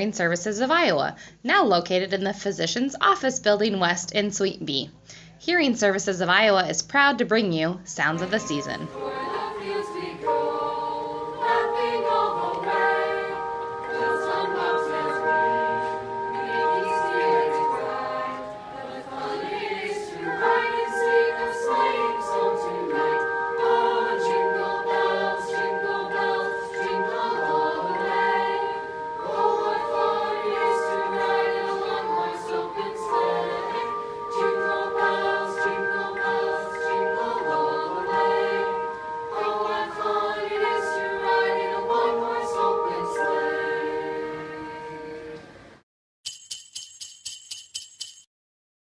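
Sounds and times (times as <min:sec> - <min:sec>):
choir singing: 0:08.2 - 0:45.7.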